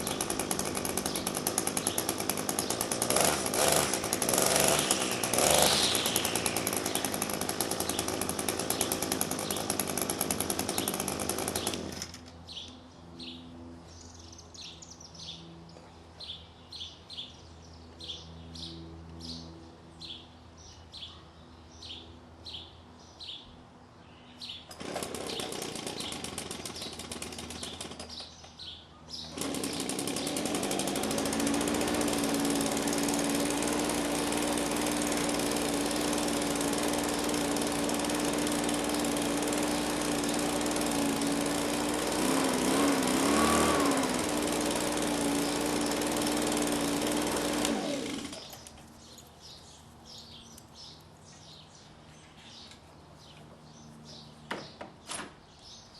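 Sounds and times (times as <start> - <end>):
small gasoline engine running: 0.0 - 12.4, 24.7 - 28.5, 29.1 - 49.2
birds chirping: 0.0 - 32.4, 44.9 - 55.9.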